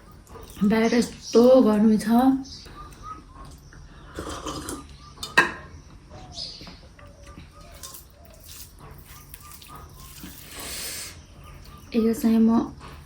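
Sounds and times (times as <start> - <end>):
faint bird chirps: 0.0 - 13.0
dishes being handled: 4.2 - 5.7
plate clink: 4.4 - 5.7.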